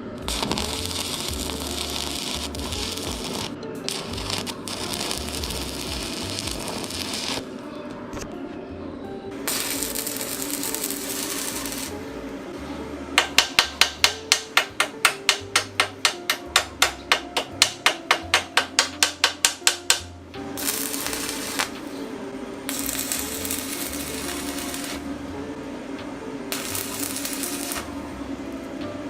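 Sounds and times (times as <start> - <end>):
welding hiss: 0.0 - 7.5, 9.4 - 12.0, 13.2 - 22.0, 22.7 - 25.1, 26.5 - 28.0
background music: 0.0 - 29.0.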